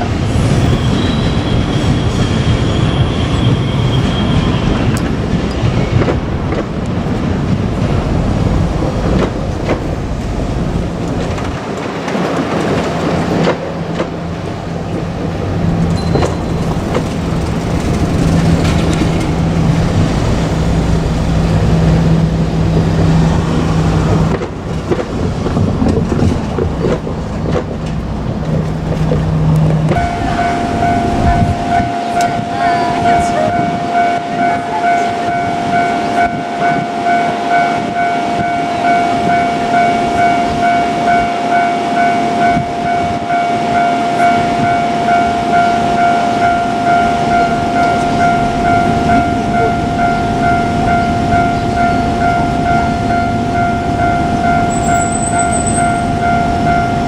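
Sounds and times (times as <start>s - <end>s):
train wheels on rails: 0.0s - 57.0s
steady high tone: 29.9s - 57.0s.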